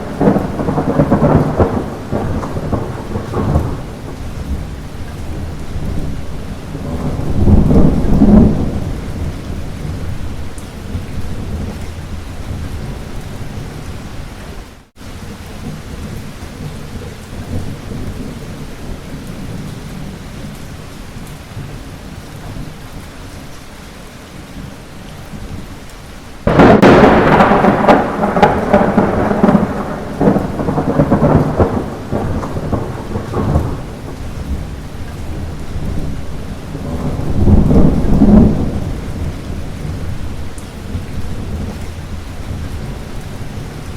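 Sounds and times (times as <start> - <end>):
loud thunderclap: 0.0 - 13.7, 26.4 - 43.9
rolling thunder: 0.0 - 14.3, 26.4 - 43.9
light rain falling: 0.0 - 43.9.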